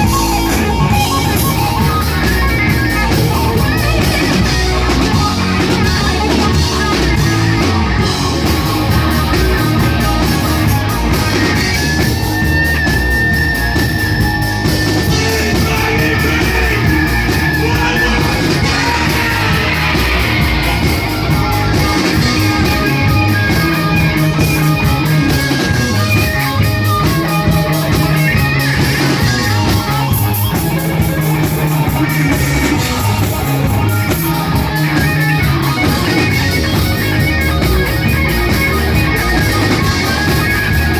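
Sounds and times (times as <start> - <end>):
live rock band playing: 0.0 - 40.9.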